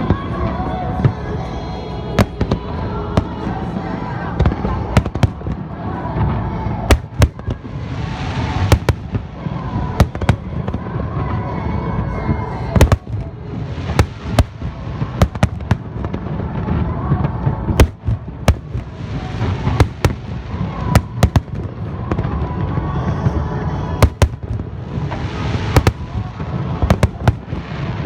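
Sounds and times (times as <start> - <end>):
rumble and crackle of fireworks: 0.0 - 28.0
firework shells bursting: 6.9 - 7.5, 8.6 - 9.2, 10.0 - 10.5, 12.8 - 13.2, 14.0 - 16.0, 17.8 - 19.0, 19.7 - 21.6, 24.0 - 24.8, 25.6 - 26.3, 26.9 - 27.6.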